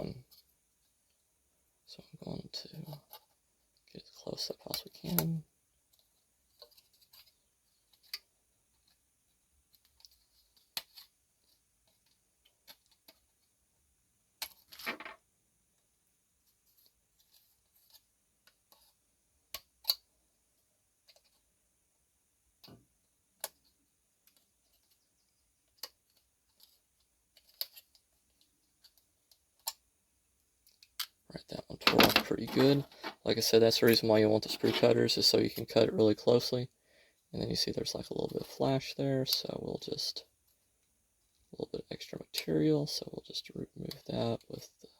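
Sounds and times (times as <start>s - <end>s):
plastic scraping crackle: 31.8s - 33.4s.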